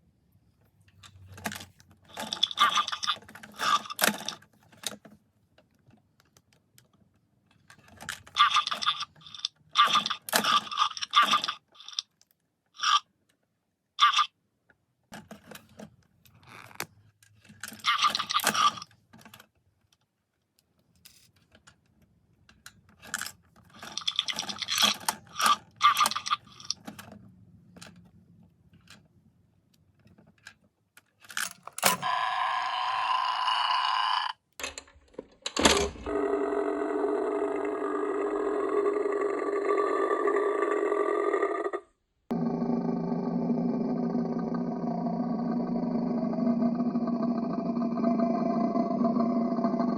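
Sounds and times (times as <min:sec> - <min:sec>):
plastic toy parts rattling: 0:01.0 - 0:05.2, 0:07.5 - 0:12.2, 0:15.1 - 0:19.5, 0:22.5 - 0:28.1, 0:30.0 - 0:32.2
toy electronic sound effect: 0:32.0 - 0:34.4.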